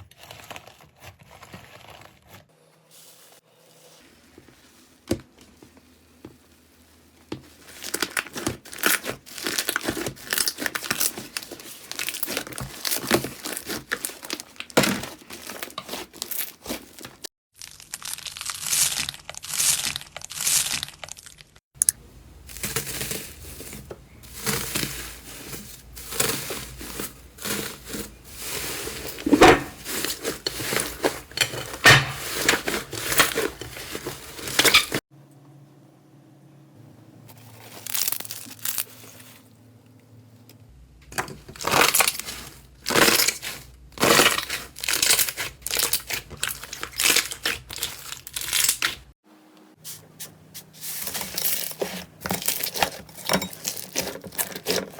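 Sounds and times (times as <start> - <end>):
slime crackling and popping: 7.8 - 21.6.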